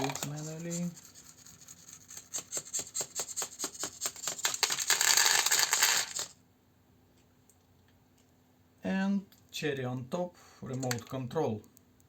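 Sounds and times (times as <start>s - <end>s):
dry kibble pouring from feeder: 4.3s - 6.3s.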